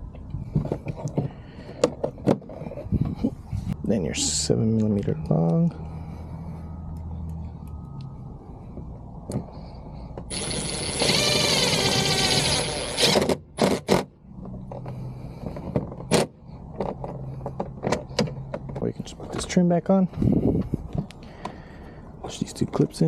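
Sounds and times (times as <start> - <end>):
power driver driving screw: 10.3 - 14.1.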